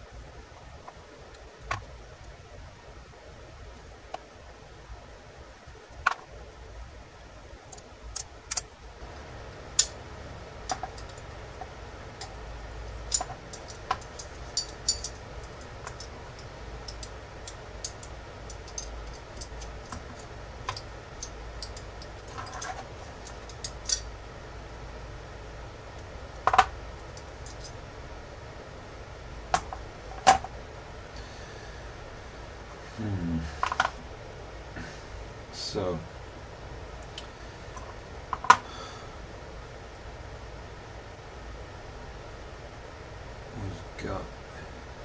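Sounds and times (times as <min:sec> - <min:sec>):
metallic clicks of small parts: 0:07.7 - 0:08.8, 0:09.7 - 0:10.0, 0:10.6 - 0:24.2, 0:26.0 - 0:27.8.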